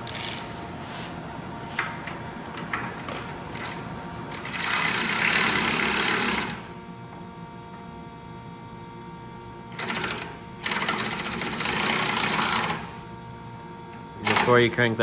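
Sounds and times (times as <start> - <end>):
cordless power wrench whirring: 0.0 - 0.5.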